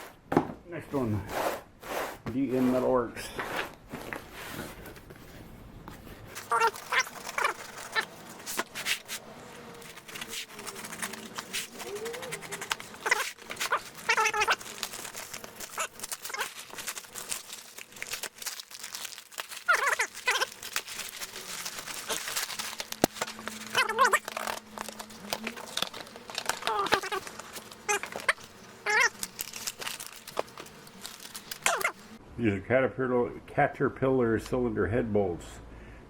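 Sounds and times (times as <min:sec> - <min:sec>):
package crinkling and clicking: 0:06.4 - 0:09.1, 0:09.8 - 0:32.2.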